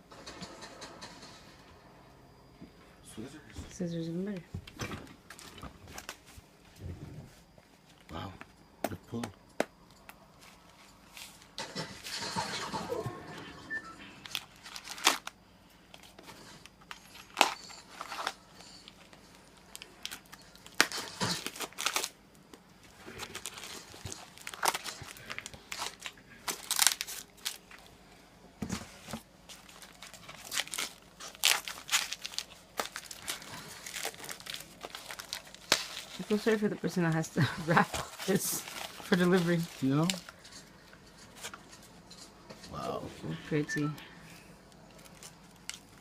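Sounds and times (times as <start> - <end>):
crinkling and tearing of wrapping: 14.2 - 27.9, 29.5 - 37.0, 37.7 - 40.6, 44.7 - 46.0.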